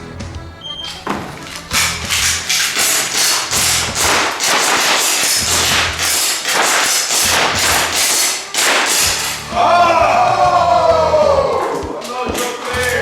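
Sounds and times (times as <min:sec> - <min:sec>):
airsoft pistols firing: 0:01.1 - 0:09.5.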